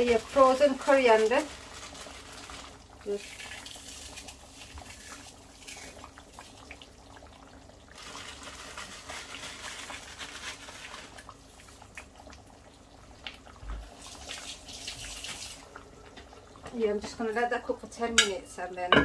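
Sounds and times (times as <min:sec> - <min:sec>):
curry bubbling in a pan: 0:00.0 - 0:18.6.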